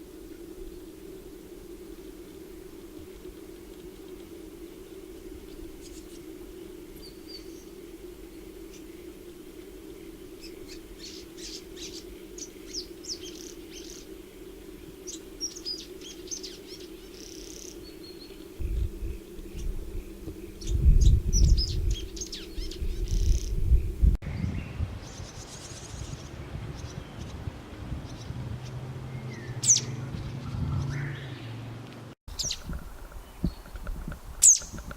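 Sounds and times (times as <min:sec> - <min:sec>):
steady low hum: 0:00.0 - 0:24.2
swallow twittering: 0:03.9 - 0:24.1, 0:32.3 - 0:34.9.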